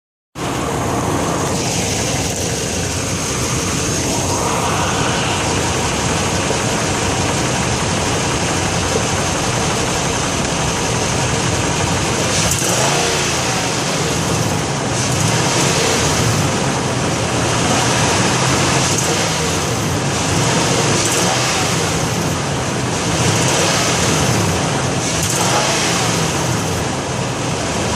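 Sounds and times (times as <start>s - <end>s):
car engine running: 0.4s - 27.9s.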